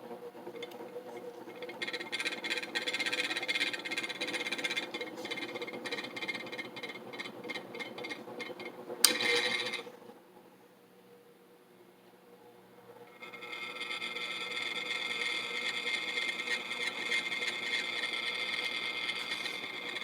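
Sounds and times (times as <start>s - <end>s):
ceiling fan motor hum: 0.0s - 20.0s
fan rattling and clicking: 0.3s - 9.9s, 14.6s - 20.0s.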